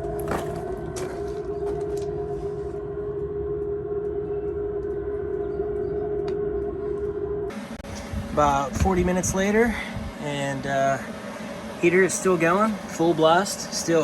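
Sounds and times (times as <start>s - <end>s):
low rumble: 0.0s - 12.9s
heater blower whine: 0.0s - 14.0s.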